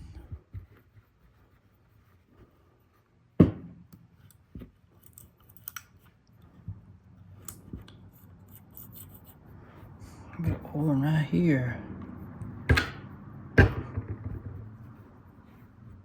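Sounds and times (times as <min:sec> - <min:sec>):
light ticks and rubbing: 0:04.0 - 0:10.0
knife parts clicking: 0:05.0 - 0:05.9.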